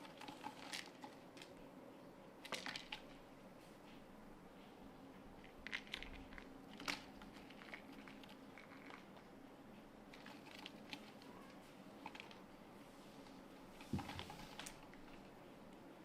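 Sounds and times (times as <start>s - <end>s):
kittens scrabbling and clicking: 0.0s - 1.6s, 10.1s - 12.5s, 13.8s - 15.3s.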